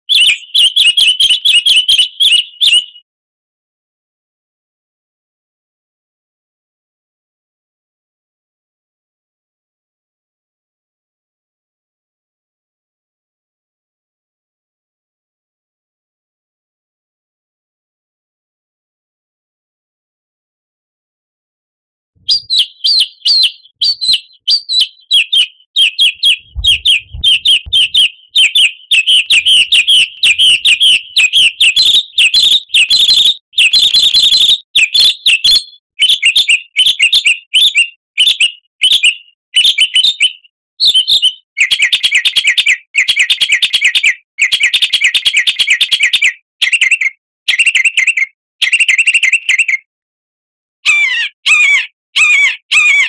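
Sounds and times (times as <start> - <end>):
songbird chirping: 0.1 - 3.0, 22.2 - 42.0.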